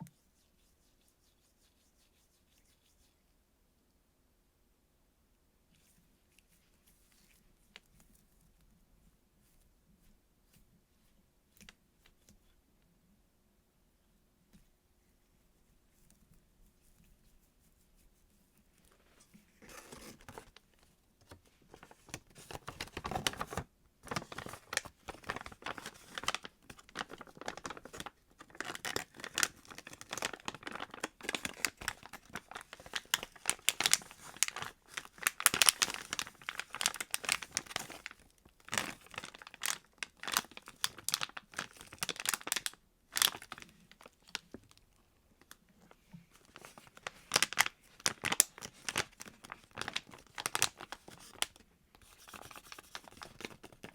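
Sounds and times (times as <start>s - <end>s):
squishy toys crinkling: 24.2s - 44.8s, 46.4s - 51.6s.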